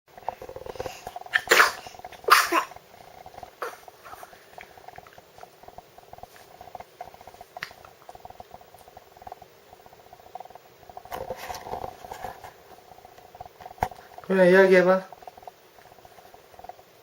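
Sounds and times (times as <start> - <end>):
person sneezing: 1.4 - 2.7.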